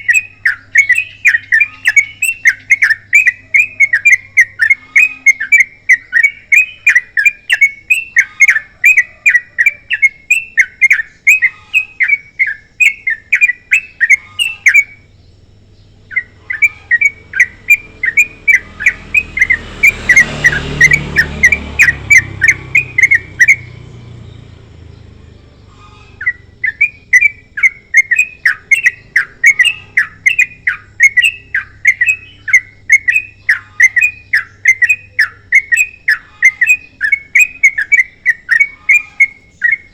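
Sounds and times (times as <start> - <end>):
bird chirping rapidly: 0.0 - 39.9.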